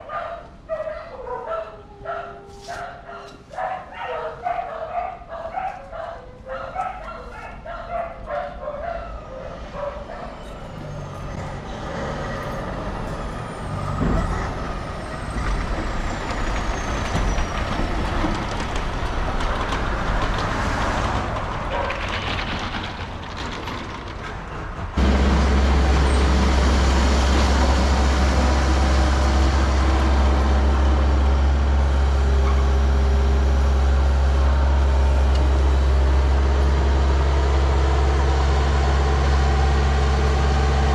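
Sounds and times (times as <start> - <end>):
dog barking: 0.0 - 10.4, 21.7 - 22.0
large vehicle engine running: 10.2 - 40.9
low engine drone: 25.0 - 40.9.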